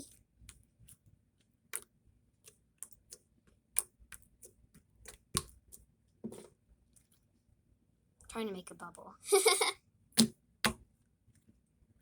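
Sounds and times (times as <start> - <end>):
slime squished by hand: 10.2 - 10.8.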